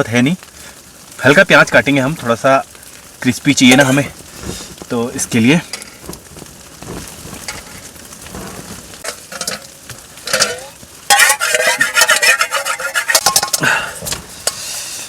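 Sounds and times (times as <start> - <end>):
food sizzling in hot oil: 0.0 - 15.0
utensil scraping a pan: 3.7 - 15.0.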